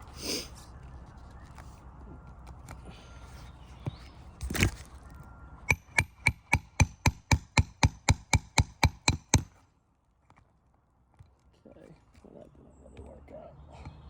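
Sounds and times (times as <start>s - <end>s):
hammer striking nail: 5.7s - 9.6s.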